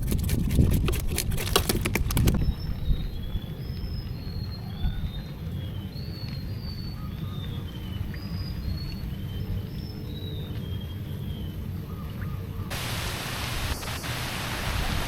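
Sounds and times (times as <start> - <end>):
birds whistling: 2.3 - 12.7.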